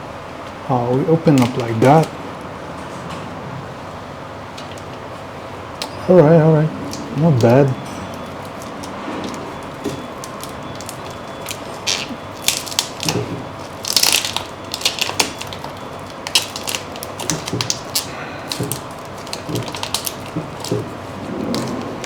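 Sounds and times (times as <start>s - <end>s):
plastic packaging crinkling: 0.8s - 2.2s, 6.8s - 22.0s.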